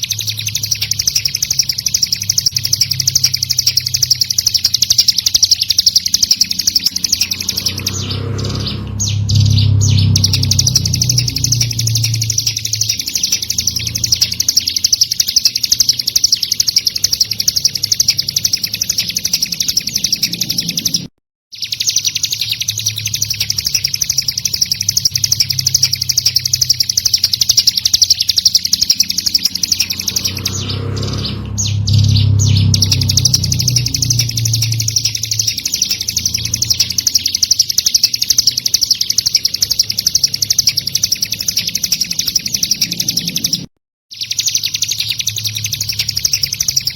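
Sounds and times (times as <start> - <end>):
bird chirping song: 0.0 - 46.9
low rumbling noise: 6.0 - 14.6, 28.7 - 37.1.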